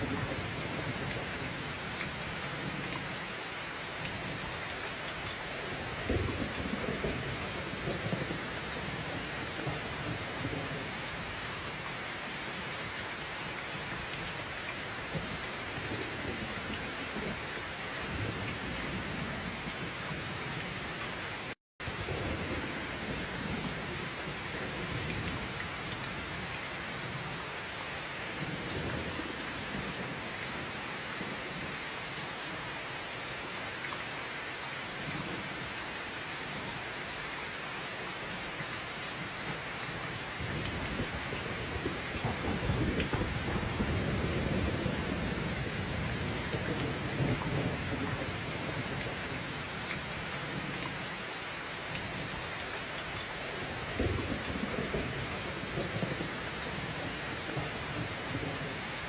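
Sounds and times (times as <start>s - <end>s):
heavy rain: 0.0s - 59.0s
low thunder rumbling: 40.4s - 49.4s.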